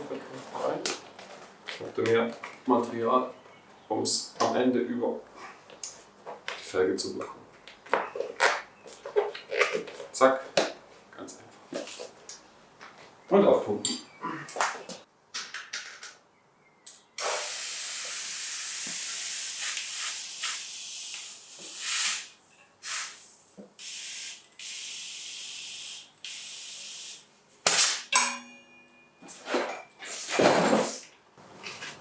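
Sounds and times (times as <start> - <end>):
air hissing into bicycle tyre: 17.2 - 27.2.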